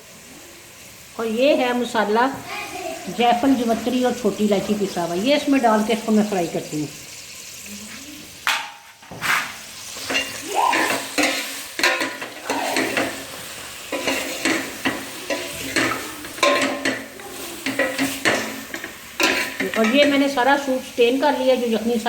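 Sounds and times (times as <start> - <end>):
chicken sizzling in butter: 0.0 - 22.0
utensil scraping a pot: 9.0 - 20.3.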